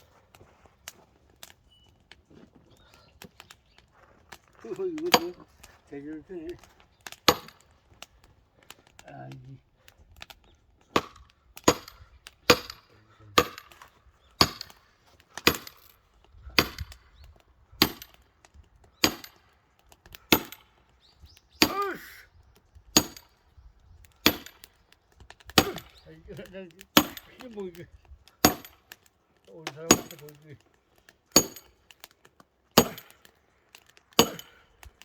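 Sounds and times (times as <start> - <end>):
log splitting cracks: 24.0 - 35.0.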